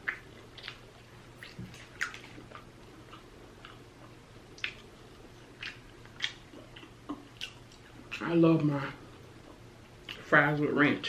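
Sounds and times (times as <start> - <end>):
mouth smacks and wet chewing: 0.0 - 8.3, 9.2 - 10.3.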